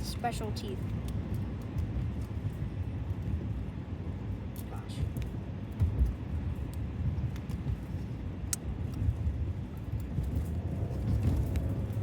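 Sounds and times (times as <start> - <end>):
car cabin rumble: 4.7 - 12.0.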